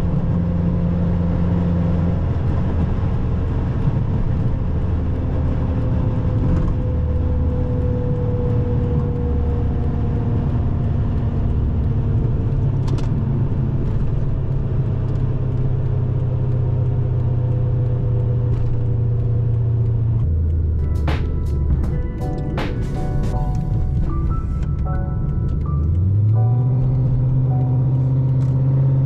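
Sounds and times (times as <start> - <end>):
car engine droning: 0.0 - 29.0
road noise: 0.0 - 29.0.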